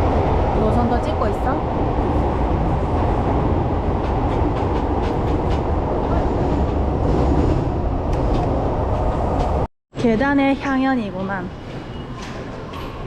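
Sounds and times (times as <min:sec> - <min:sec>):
subway train low rumble: 0:00.0 - 0:13.0.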